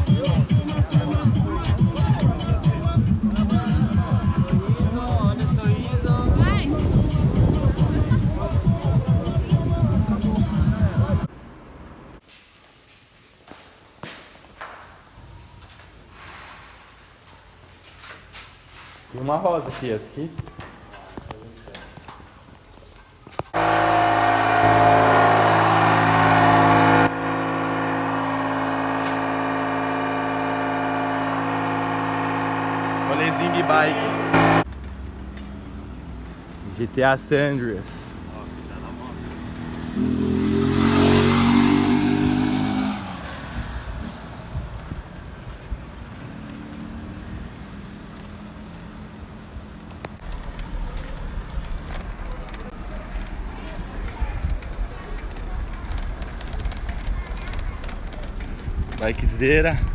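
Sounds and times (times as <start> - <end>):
vehicle engine rumble: 0.0 - 12.2, 23.6 - 59.9
engine running steadily: 23.6 - 34.7.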